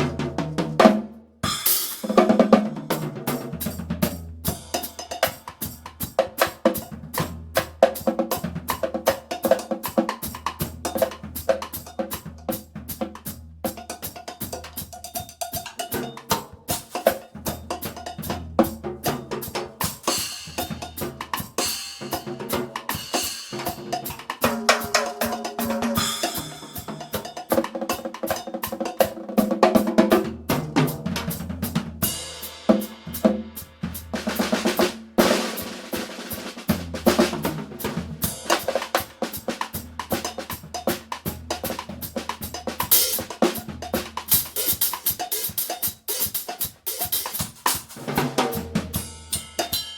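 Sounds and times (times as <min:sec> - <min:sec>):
drum kit playing: 0:00.0 - 0:49.9.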